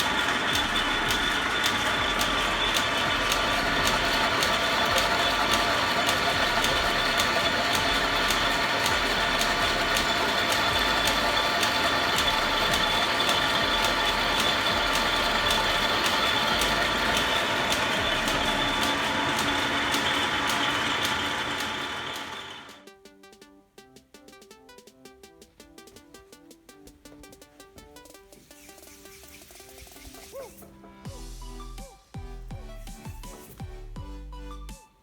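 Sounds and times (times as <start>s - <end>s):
lathe gears whining: 0.0s - 22.8s
regular ticking: 0.0s - 22.8s.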